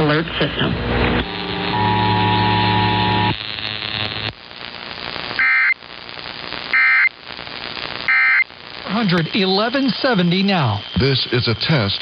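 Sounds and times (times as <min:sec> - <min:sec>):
radio static: 0:00.0 - 0:12.0
digital data tone bursts: 0:05.4 - 0:05.8, 0:08.0 - 0:12.0.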